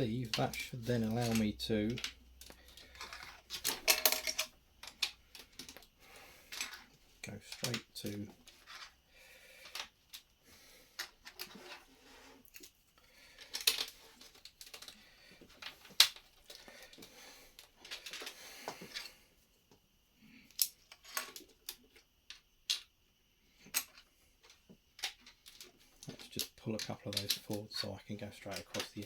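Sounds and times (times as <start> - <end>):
plastic bricks clicking and rattling: 0.0 - 5.9, 13.4 - 18.4, 20.5 - 22.9, 23.6 - 29.0.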